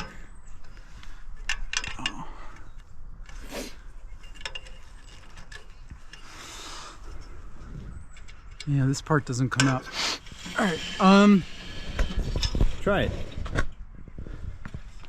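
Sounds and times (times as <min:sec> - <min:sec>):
metal clicks and clinks: 0:04.2 - 0:06.2.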